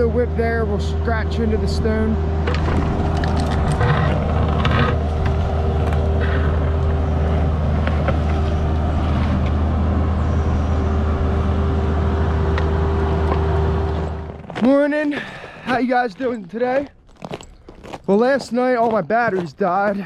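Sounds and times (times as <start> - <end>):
hydraulic whine: 0.0 - 14.6
excavator diesel engine running: 0.0 - 16.5.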